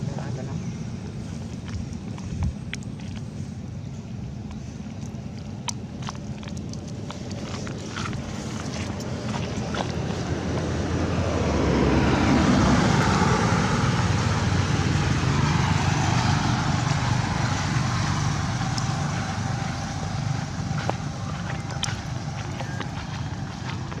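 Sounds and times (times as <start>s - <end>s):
vehicle passing: 7.4s - 24.0s.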